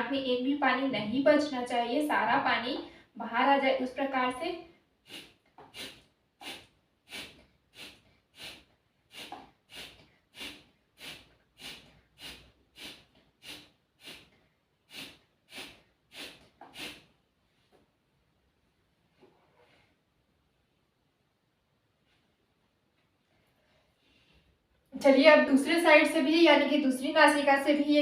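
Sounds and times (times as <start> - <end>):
forceful breath puffs through nose: 5.0 - 17.2.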